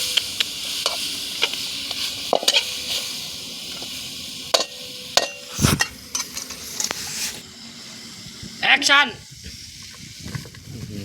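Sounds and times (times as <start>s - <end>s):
food sizzling in pan: 0.0s - 11.0s
metal spatula scraping pan: 0.8s - 3.0s.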